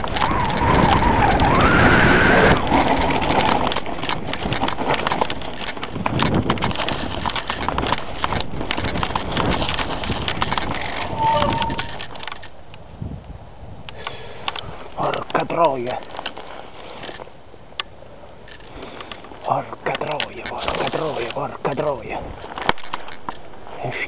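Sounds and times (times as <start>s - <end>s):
bike chain and frame clattering: 0.0s - 12.8s, 14.0s - 24.0s
disc brakes squealing: 10.8s - 12.2s.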